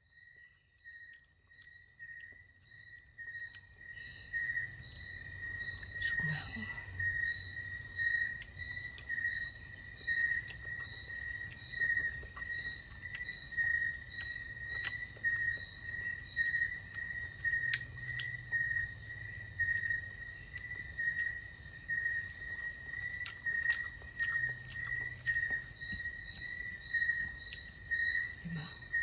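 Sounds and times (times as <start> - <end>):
insect trilling: 0.0 - 29.0.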